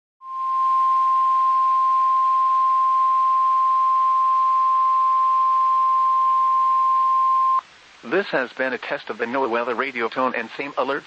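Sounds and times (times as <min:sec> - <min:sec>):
steady high alarm beep: 0:00.2 - 0:07.6
radio hiss: 0:07.6 - 0:11.0.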